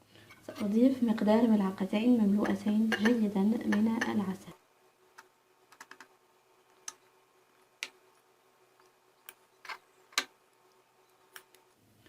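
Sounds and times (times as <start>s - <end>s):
metal spoon tapping a dish: 2.4s - 4.2s.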